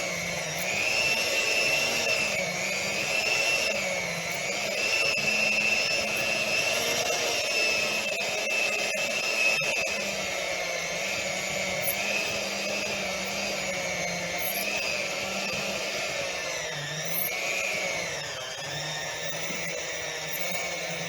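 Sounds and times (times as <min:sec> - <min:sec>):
electric hand mixer whining: 0:00.0 - 0:21.0.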